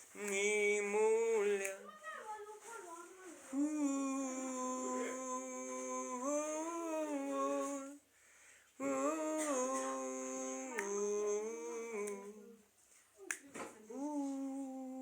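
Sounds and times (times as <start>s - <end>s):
person singing a hymn: 0.0s - 1.8s, 3.4s - 8.1s, 8.8s - 12.6s, 13.9s - 15.0s.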